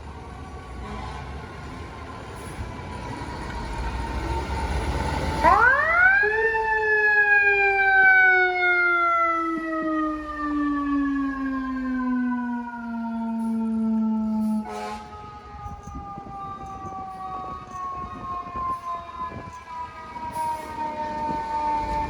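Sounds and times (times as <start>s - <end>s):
mechanical fire truck siren: 3.9s - 22.0s
heavy truck engine rumble: 12.4s - 22.0s.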